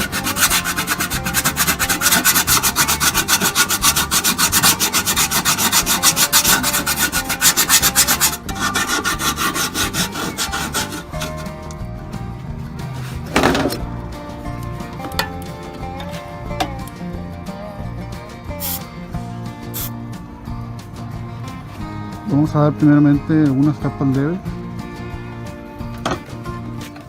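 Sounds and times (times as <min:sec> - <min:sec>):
sandpaper scraping metal: 0:00.0 - 0:11.6, 0:18.6 - 0:18.9, 0:19.7 - 0:19.9.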